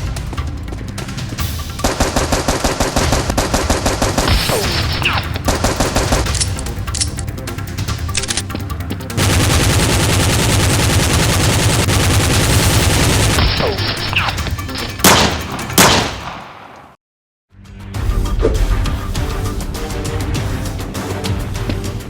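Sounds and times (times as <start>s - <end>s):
rapid automatic gunfire: 1.8s - 6.6s, 9.2s - 14.2s
loud single gunshots: 15.0s - 16.9s.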